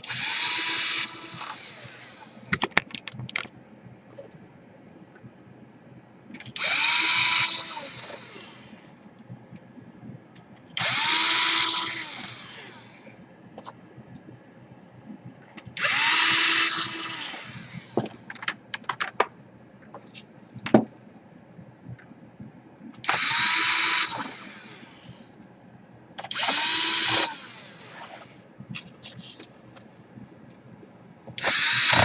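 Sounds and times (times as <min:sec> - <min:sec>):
electric screwdriver motor whine: 0:00.0 - 0:02.3, 0:06.6 - 0:08.7, 0:10.8 - 0:13.0, 0:15.8 - 0:17.9, 0:23.1 - 0:24.8, 0:26.2 - 0:28.3, 0:31.4 - 0:32.0.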